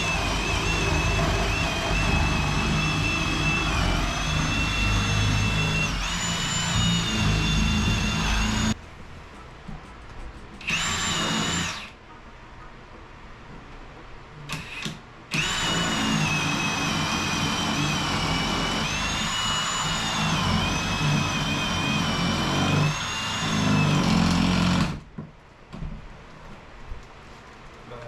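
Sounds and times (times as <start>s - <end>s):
cordless drill motor whine: 0.0s - 8.8s, 10.7s - 11.9s, 14.6s - 24.9s.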